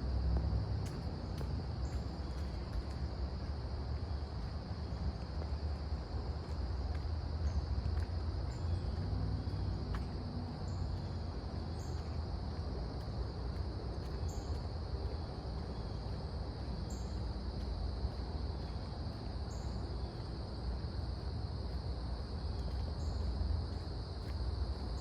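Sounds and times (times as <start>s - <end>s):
crickets chirping: 0.0s - 25.0s.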